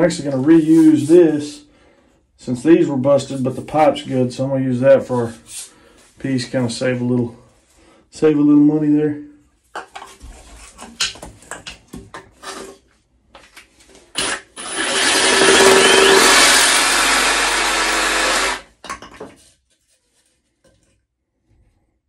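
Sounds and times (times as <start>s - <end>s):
power saw cutting plastic pipe: 14.1s - 18.7s.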